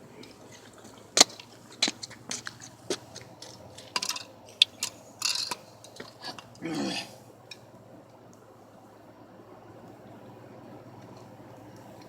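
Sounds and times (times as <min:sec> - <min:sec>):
hard parts clicking and knocking: 0:03.4 - 0:06.4.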